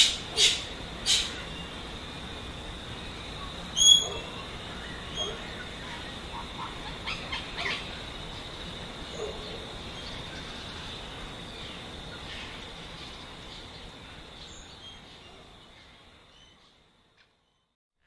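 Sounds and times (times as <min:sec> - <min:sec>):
cockatoo calls: 0:00.0 - 0:01.5, 0:03.7 - 0:08.0
high outdoor hiss: 0:00.0 - 0:17.6.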